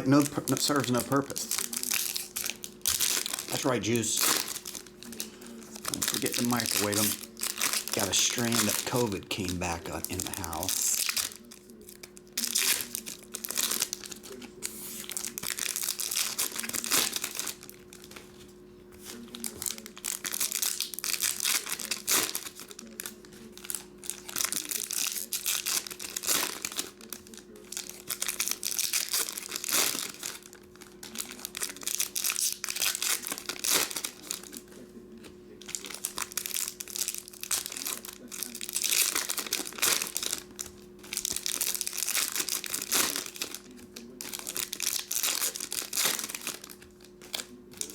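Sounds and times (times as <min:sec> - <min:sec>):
faint electrical hum: 0:00.0 - 0:47.9
foil wrappers crinkling and tearing: 0:00.0 - 0:47.9.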